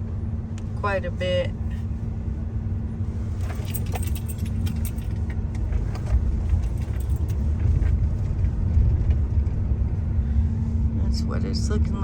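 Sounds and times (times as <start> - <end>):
truck engine and tyre rumble: 0.0 - 12.0
metallic jingling rattles: 3.4 - 7.8.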